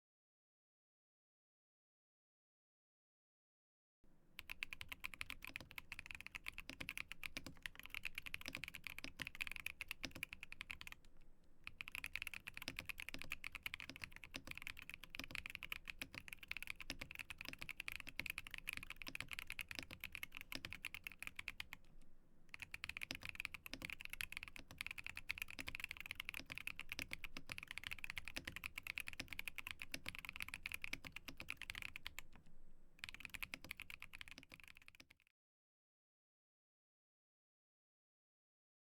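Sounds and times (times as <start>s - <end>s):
mechanical keyboard typing: 4.4s - 11.0s, 11.6s - 21.8s, 22.5s - 32.4s, 33.0s - 35.3s.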